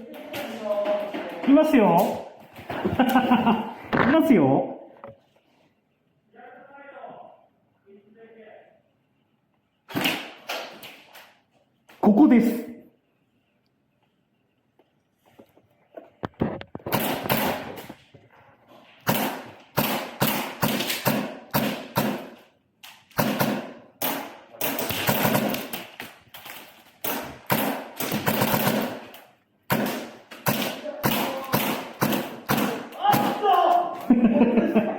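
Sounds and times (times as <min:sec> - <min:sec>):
airsoft guns firing: 0:09.9 - 0:11.1, 0:16.8 - 0:17.9, 0:19.0 - 0:34.1.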